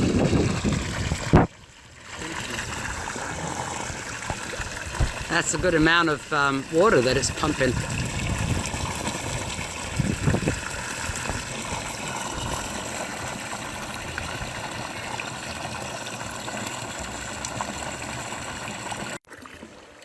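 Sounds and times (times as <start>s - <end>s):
water rushing from pump hose: 0.0s - 20.0s.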